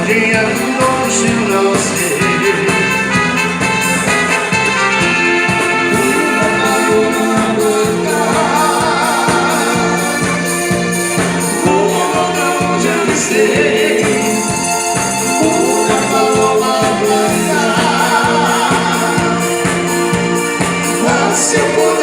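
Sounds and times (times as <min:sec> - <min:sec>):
band music: 0:00.0 - 0:22.0.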